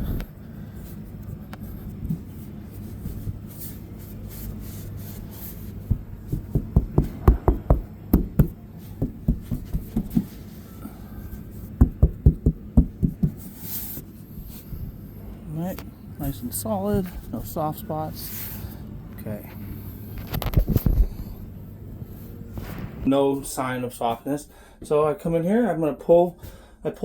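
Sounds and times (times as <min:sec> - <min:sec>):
steady low hum: 0:00.0 - 0:26.9
dull thumps on roof: 0:05.8 - 0:10.4, 0:11.8 - 0:13.4.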